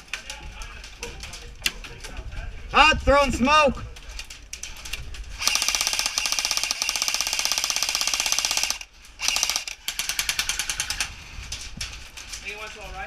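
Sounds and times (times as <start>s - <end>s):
airsoft gun firing bursts: 5.4s - 11.1s.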